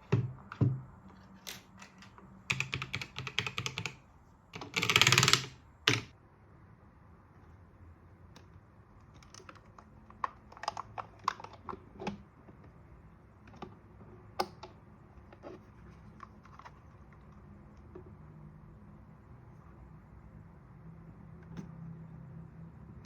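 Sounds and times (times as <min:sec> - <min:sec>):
mechanical keyboard keys clicking: 0:01.5 - 0:04.0, 0:04.6 - 0:06.1.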